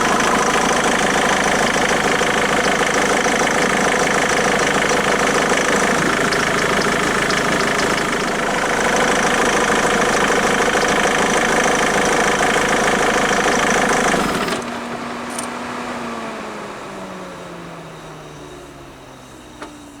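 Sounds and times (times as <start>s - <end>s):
whine spinning down: 0.0s - 11.2s
diesel engine idling: 0.0s - 14.6s.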